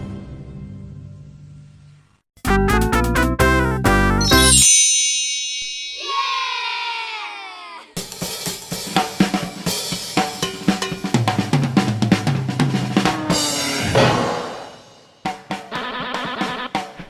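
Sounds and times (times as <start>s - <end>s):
drum kit jingle with bass line: 2.4s - 7.2s, 8.0s - 17.0s
cartoon pitch slide effect: 4.2s - 4.8s, 13.1s - 14.3s
cymbal crash: 13.0s - 15.2s.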